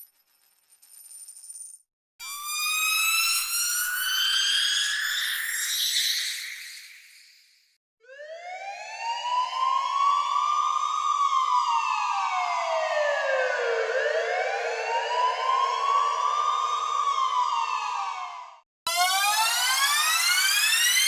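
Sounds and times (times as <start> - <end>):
emergency vehicle siren wailing: 2.2 - 5.4, 8.0 - 21.0.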